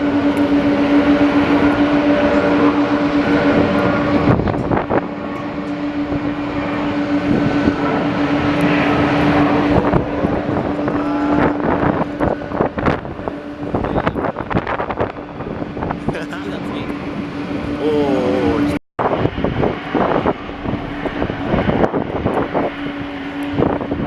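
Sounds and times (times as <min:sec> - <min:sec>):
jet engines humming: 0:00.0 - 0:24.0
wind gusting on microphone: 0:00.0 - 0:24.0.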